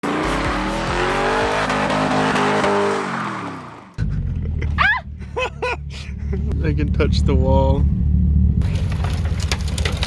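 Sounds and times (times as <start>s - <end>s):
vehicle engine working hard: 0.0s - 10.0s
low steady engine rumble: 4.0s - 10.0s.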